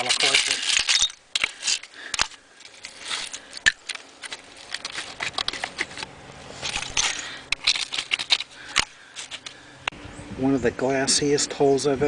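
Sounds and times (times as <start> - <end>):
broken glass clinking and crunching: 0.0 - 5.8, 6.6 - 9.3.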